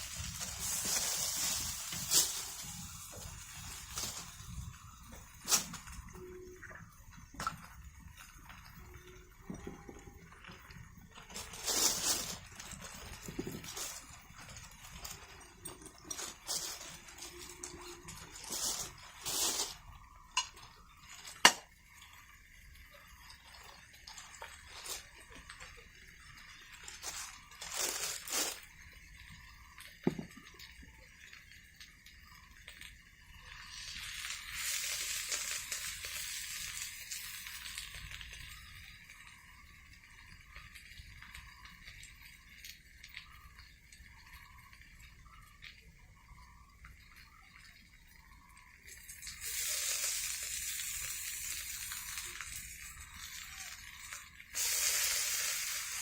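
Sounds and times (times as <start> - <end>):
steady hiss: 0.0 - 7.2, 11.1 - 29.2, 49.0 - 56.0
utensils and dishes clinking: 0.0 - 29.4, 30.0 - 30.8.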